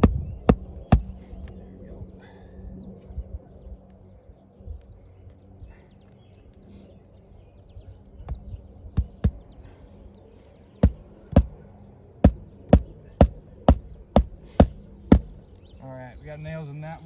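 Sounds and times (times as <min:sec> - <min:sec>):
hammer striking nails: 0:10.8 - 0:11.5, 0:12.2 - 0:15.4.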